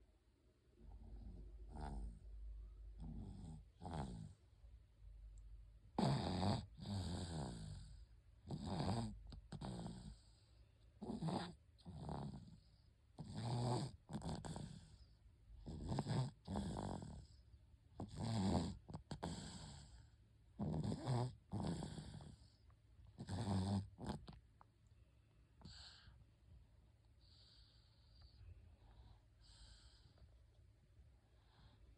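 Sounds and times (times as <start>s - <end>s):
baby snoring: 1.0s - 2.2s, 3.0s - 4.4s, 6.0s - 10.4s, 11.0s - 15.0s, 15.6s - 17.4s, 18.0s - 22.5s, 23.2s - 24.4s.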